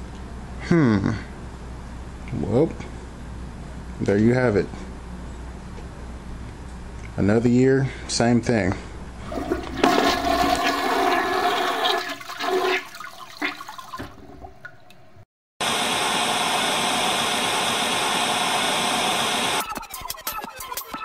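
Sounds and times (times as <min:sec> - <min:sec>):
water rushing and gurgling: 0:09.2 - 0:14.9.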